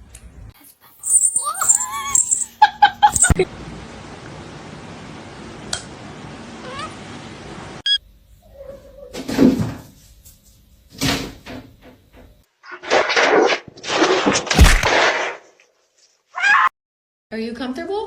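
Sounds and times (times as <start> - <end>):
cat crying: 1.0 - 3.4, 6.6 - 7.0, 8.4 - 9.2, 16.4 - 16.7
steady background hiss: 1.9 - 8.5.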